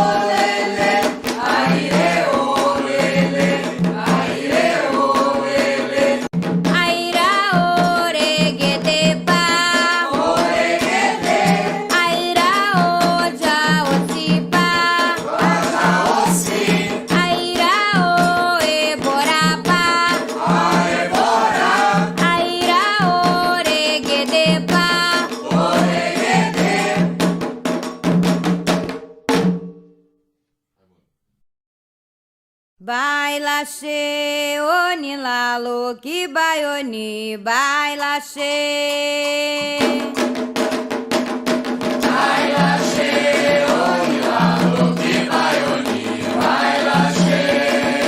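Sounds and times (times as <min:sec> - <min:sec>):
call-and-response singing: 0:00.0 - 0:27.2, 0:42.0 - 0:48.0
drums and percussion: 0:00.0 - 0:30.0, 0:38.4 - 0:48.0.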